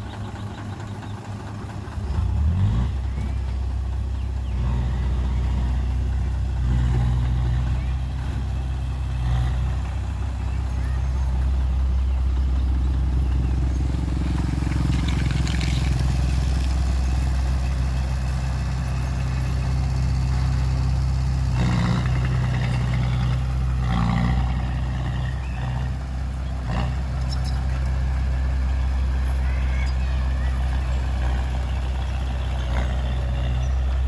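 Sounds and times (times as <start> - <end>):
heavy diesel engine droning: 0.0 - 34.0.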